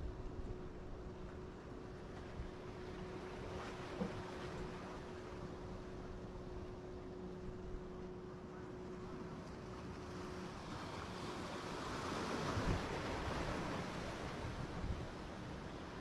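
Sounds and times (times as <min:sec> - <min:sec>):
ocean surf washing: 0:09.2 - 0:16.0.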